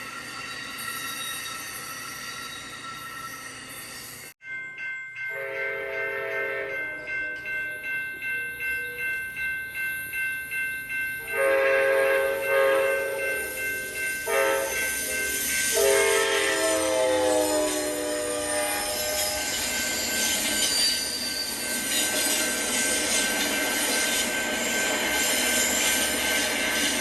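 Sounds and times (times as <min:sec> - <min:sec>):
bell ringing steadily: 0:00.0 - 0:27.0
locomotive air horn blasts: 0:05.3 - 0:06.9, 0:11.3 - 0:13.5, 0:14.3 - 0:14.9, 0:15.7 - 0:19.6.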